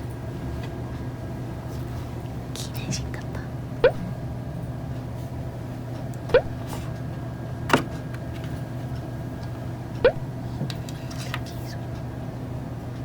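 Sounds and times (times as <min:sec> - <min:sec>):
steady low hum: 0:03.5 - 0:07.7, 0:08.6 - 0:10.9.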